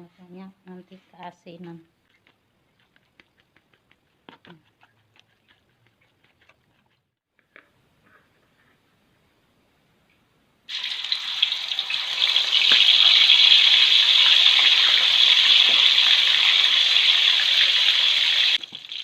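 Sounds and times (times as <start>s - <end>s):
meat sizzling in hot oil: 10.7s - 19.0s.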